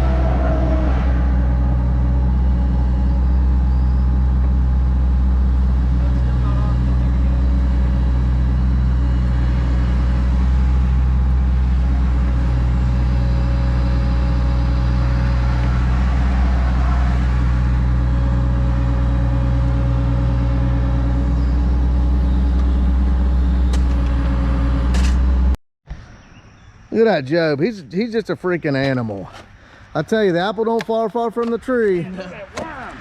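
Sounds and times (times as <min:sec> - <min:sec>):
excavator diesel engine running: 0:00.0 - 0:25.6.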